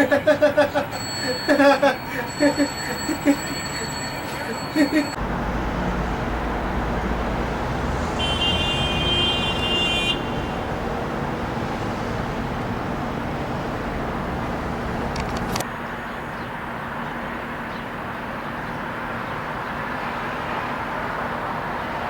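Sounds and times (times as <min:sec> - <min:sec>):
traffic rumble: 0:00.0 - 0:22.0.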